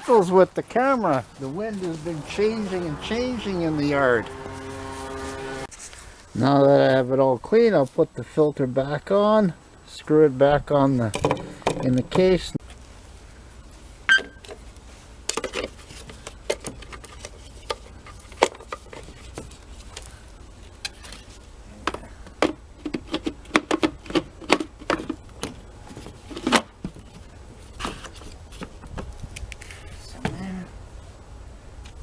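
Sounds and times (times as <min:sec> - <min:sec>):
plastic clicks and knocks: 0:11.1 - 0:12.3.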